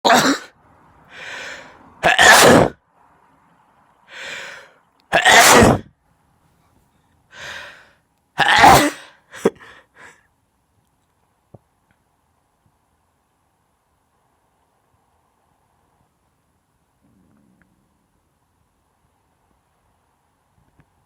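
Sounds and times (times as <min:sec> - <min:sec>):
person sneezing: 0:00.0 - 0:00.5, 0:02.0 - 0:02.8, 0:05.1 - 0:05.9, 0:08.4 - 0:09.7
intake of breath: 0:01.1 - 0:02.0, 0:04.1 - 0:04.8, 0:07.3 - 0:08.0.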